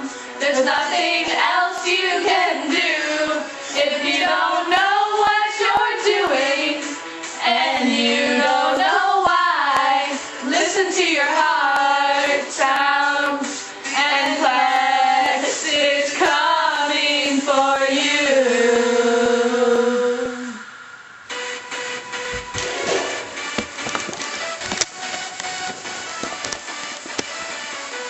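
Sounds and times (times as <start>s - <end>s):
women singing: 0.0s - 20.6s.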